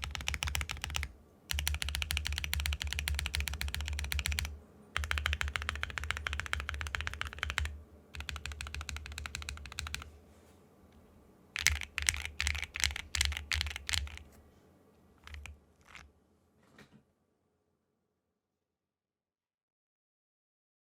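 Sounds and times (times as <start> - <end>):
typing on mechanical keyboard: 0.0 - 10.1, 11.6 - 14.3, 15.2 - 16.1.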